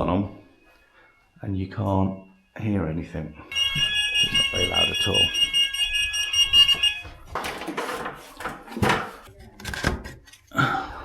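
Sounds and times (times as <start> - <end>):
fire alarm sounder: 2.0 - 7.8.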